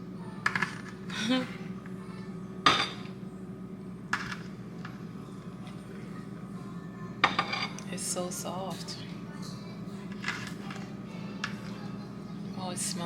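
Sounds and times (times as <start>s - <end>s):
steady low hum: 0.0s - 13.0s
dishes clinking and knocking: 2.6s - 3.1s, 7.2s - 7.8s.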